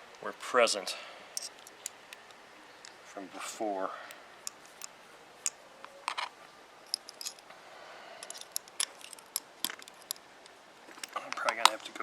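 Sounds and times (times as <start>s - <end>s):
metal parts and tools clinking: 1.4s - 3.0s, 4.4s - 7.5s, 8.2s - 12.0s.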